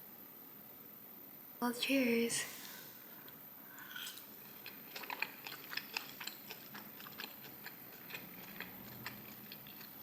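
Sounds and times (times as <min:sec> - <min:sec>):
person chewing food: 0:03.2 - 0:10.0.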